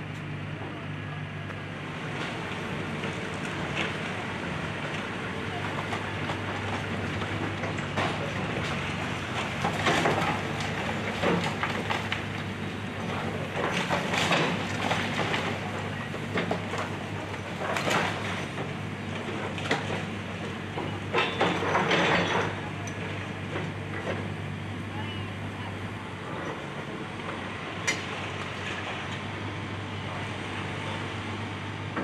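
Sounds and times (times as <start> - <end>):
excavator engine running: 0.0 - 32.0.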